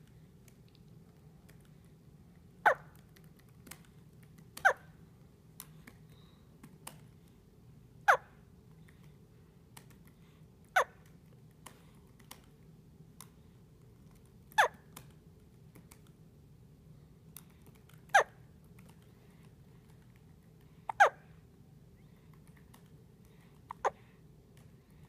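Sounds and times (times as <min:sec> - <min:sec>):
soft hiccups: 0:02.6 - 0:02.9, 0:08.1 - 0:08.4, 0:10.8 - 0:11.0, 0:18.1 - 0:18.4, 0:20.9 - 0:21.2.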